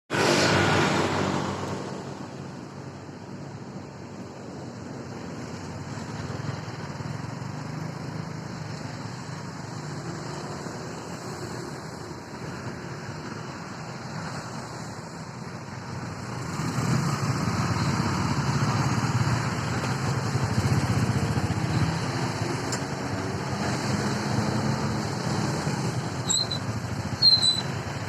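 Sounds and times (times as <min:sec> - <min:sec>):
road noise: 0:00.1 - 0:28.0
bus engine rumble: 0:00.3 - 0:28.0.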